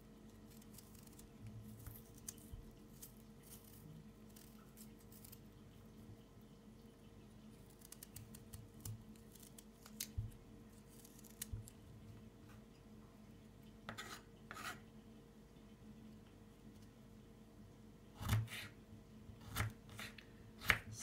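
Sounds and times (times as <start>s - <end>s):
knife scraping ginger: 0.5s - 5.4s, 13.9s - 14.8s, 18.2s - 18.8s, 19.4s - 21.0s.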